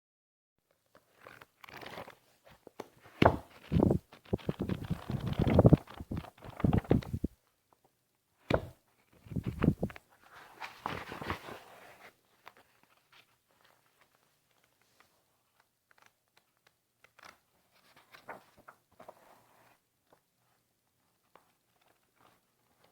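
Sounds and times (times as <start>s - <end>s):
paper rustling and crinkling: 3.3s - 7.3s, 9.3s - 15.2s, 15.9s - 19.7s.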